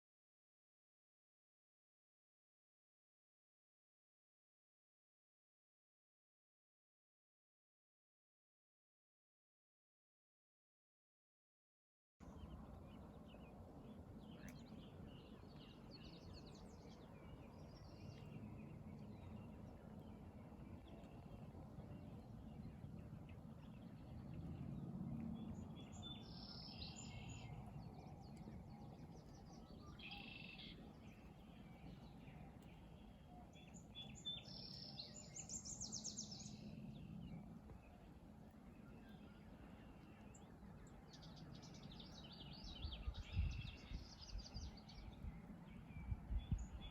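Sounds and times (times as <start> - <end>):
birds chirping: 12.3 - 46.9.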